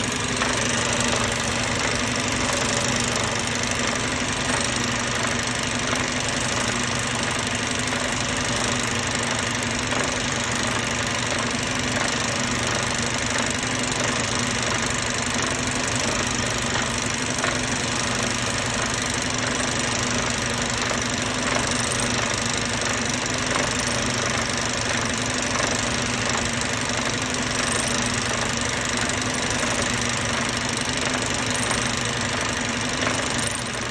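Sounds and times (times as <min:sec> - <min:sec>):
engine idling: 0:00.0 - 0:33.9.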